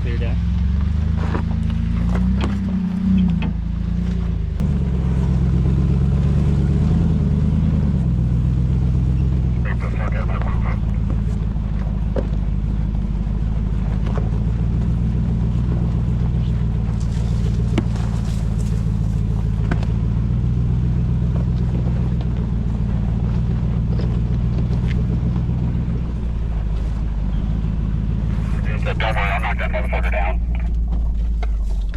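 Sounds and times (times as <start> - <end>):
truck engine at low revs: 0.0 - 31.9.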